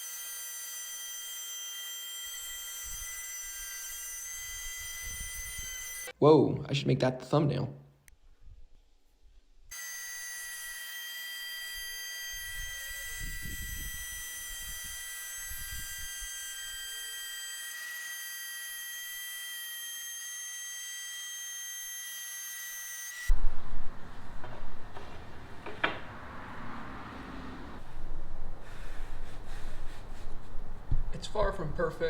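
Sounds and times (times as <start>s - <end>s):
electric router whining: 9.7s - 23.4s.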